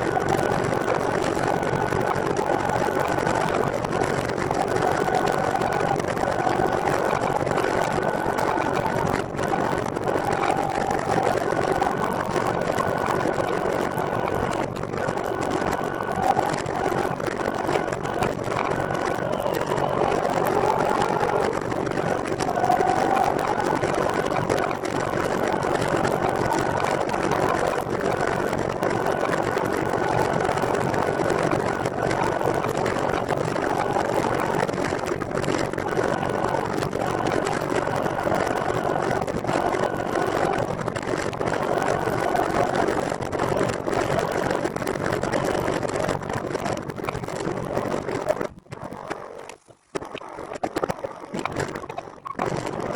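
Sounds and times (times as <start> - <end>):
faint mechanical whine: 0.0 - 45.5
wind noise: 0.0 - 52.9.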